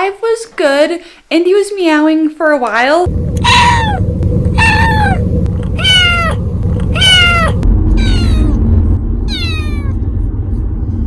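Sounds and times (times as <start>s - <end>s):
steady low rumble: 3.0s - 11.0s
kitten meowing: 3.4s - 4.0s, 4.6s - 5.2s, 5.8s - 8.6s, 9.3s - 9.9s.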